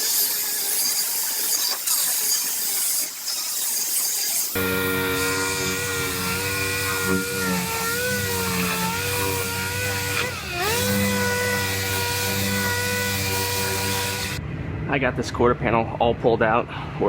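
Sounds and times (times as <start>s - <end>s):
power tool motor whining: 0.0s - 14.4s.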